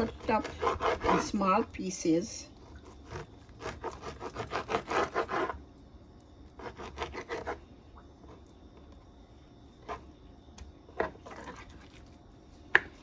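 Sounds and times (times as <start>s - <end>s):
knife sawing through raw liver: 0.0s - 1.7s, 2.6s - 5.6s, 6.5s - 7.7s.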